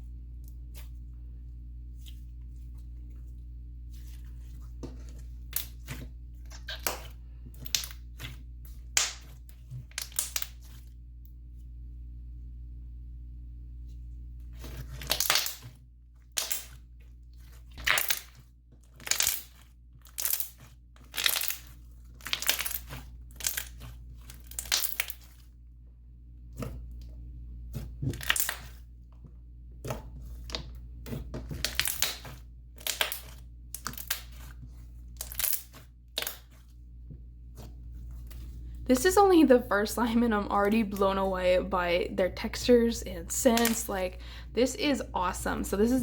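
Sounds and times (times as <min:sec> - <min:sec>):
slime squishing wet crackles: 0:14.5 - 0:25.6, 0:29.8 - 0:38.6.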